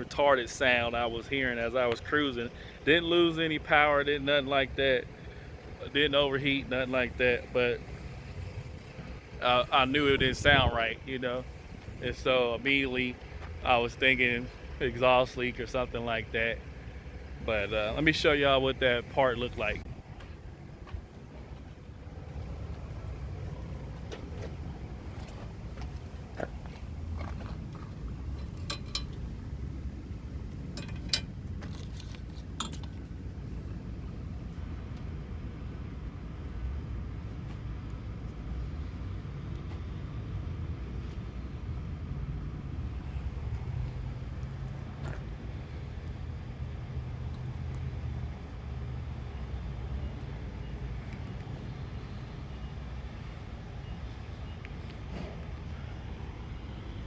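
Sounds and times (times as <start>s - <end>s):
vehicle engine running: 0.0s - 33.6s
steady low rumble: 0.0s - 47.0s
metallic clinks and clatter: 28.3s - 29.3s, 30.7s - 33.0s.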